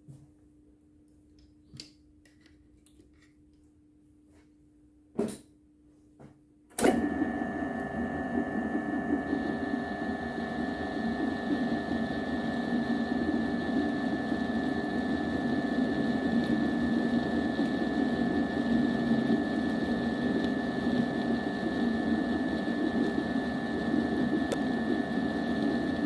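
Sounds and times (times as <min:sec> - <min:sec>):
machine hum with high whine: 0:06.0 - 0:26.0.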